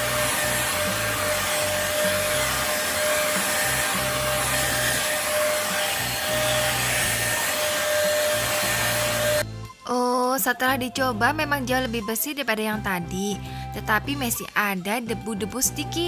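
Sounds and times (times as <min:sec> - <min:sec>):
vacuum cleaner running: 0:00.0 - 0:09.4.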